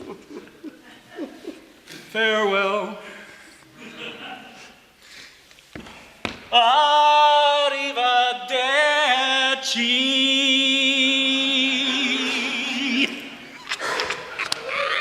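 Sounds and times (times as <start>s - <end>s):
barbershop quartet singing: 6.5s - 14.2s.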